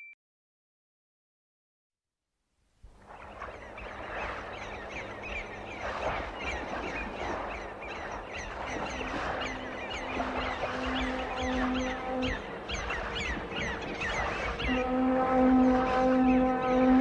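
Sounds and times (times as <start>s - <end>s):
seagulls calling: 3.0s - 17.0s
held musical note: 14.6s - 17.0s.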